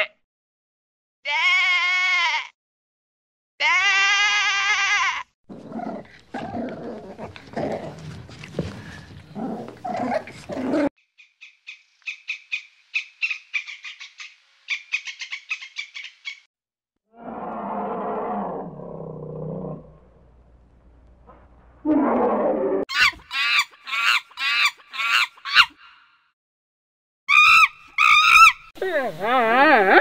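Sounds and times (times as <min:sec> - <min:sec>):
sheep bleating: 0:01.3 - 0:02.5
harsh animal calls: 0:27.3 - 0:30.0.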